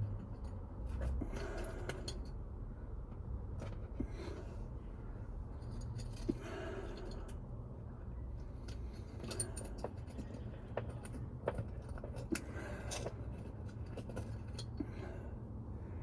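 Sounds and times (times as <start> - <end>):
low background rumble: 0.0 - 16.0
metal screws and tools clicking: 8.7 - 14.8.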